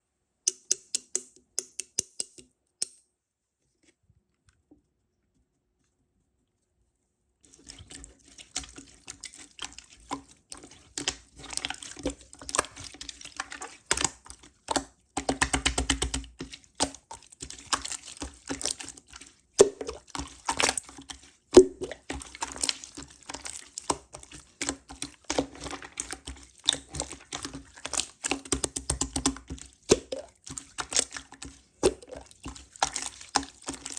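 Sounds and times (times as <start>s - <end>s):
slime squishing with sticky clicks: 8.7s - 33.9s.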